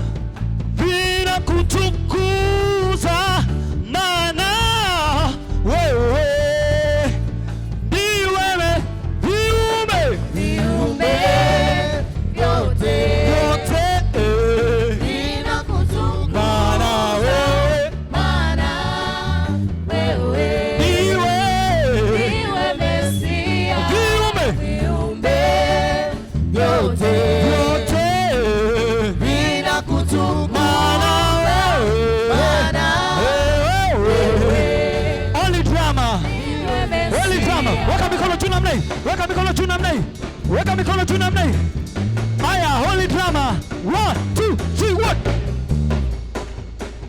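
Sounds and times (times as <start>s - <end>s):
band with steady bass line: 0.0s - 47.0s
voices singing gospel: 9.2s - 41.6s.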